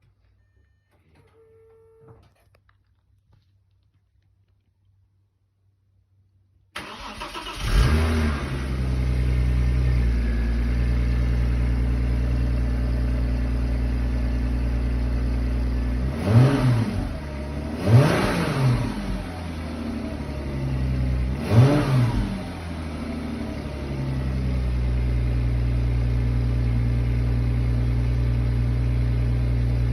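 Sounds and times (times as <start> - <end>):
car engine idling: 6.7 - 16.1, 22.4 - 29.9
car engine cranking: 6.8 - 9.1
car engine revving: 6.8 - 13.3, 13.9 - 25.4.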